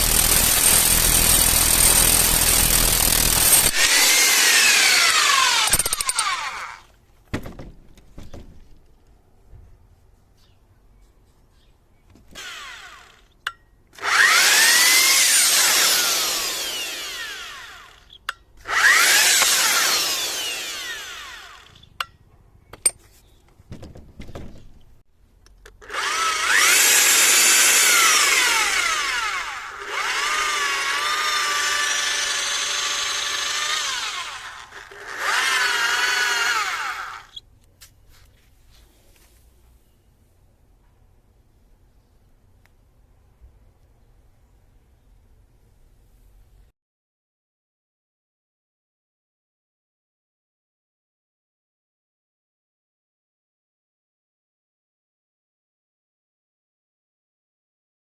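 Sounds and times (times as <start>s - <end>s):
rotary hammer running: 0.0s - 6.8s, 25.8s - 37.3s.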